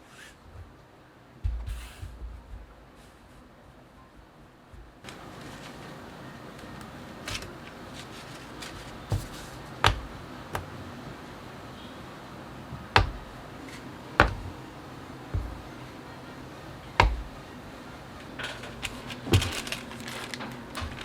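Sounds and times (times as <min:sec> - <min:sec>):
small hard parts clicking and knocking: 0:18.2 - 0:21.0.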